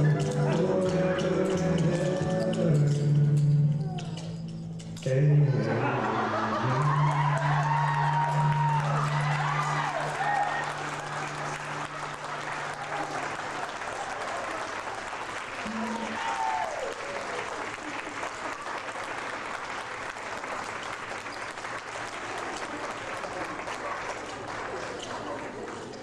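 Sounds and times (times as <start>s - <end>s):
audience applauding: 5.9s - 26.0s.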